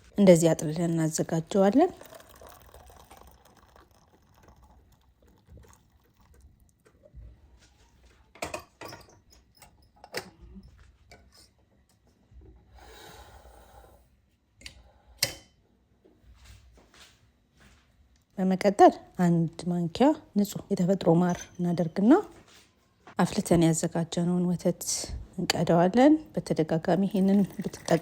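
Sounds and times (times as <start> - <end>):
liquid pouring: 0.5 - 7.8, 26.9 - 28.0
clinks and knocks of kitchenware: 8.3 - 11.5, 21.2 - 21.6, 27.2 - 28.0.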